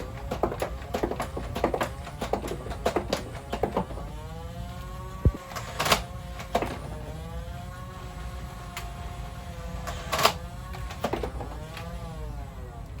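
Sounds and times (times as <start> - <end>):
flywheel motors whining: 0.0 - 13.0.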